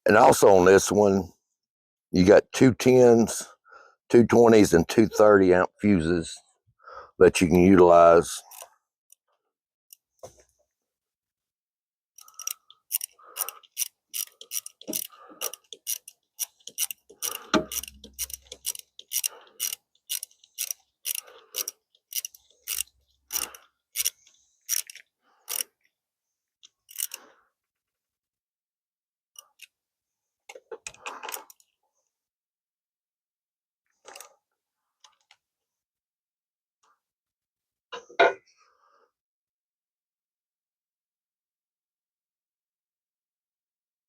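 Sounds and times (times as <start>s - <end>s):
sharp mechanical clicks: 12.2s - 25.6s, 26.9s - 27.2s.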